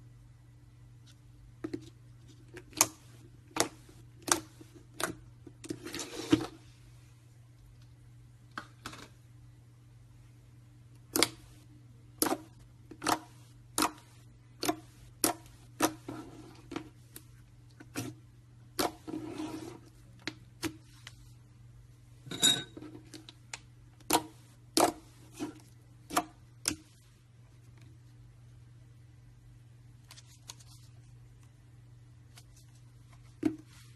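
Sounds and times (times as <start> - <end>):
steady low hum: 0.0 - 33.9
rustling and scraping: 19.0 - 19.9.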